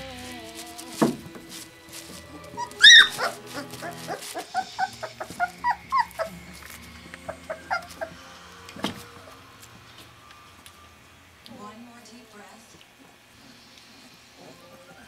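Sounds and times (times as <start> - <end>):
puppies whimpering and yipping: 2.0 - 9.4, 14.3 - 15.0.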